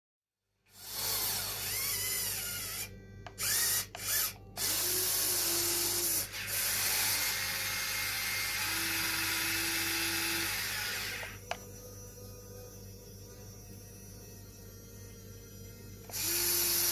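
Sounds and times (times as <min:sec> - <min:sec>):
small electric motors whining: 0:00.7 - 0:16.9.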